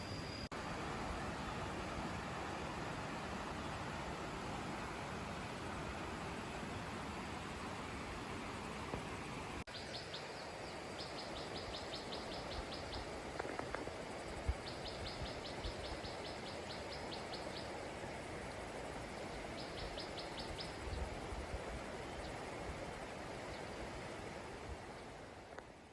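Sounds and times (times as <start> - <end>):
background hiss: 0.0 - 25.9.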